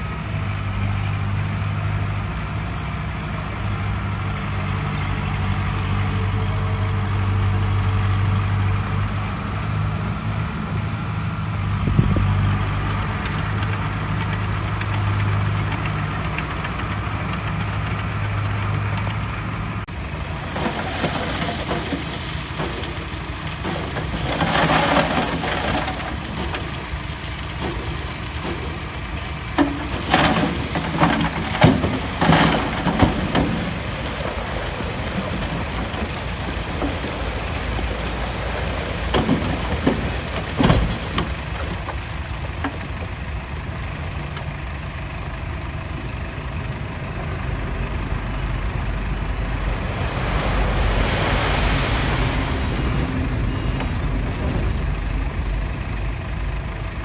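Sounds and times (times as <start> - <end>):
diesel machinery engine running: 0.0 - 57.0
sharp knocks and rattling: 20.5 - 43.1.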